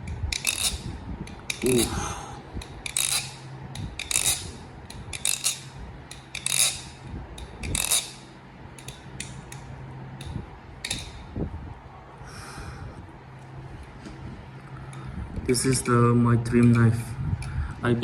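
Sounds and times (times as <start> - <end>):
butterfly knife clacking: 0.3 - 2.0, 2.6 - 11.3.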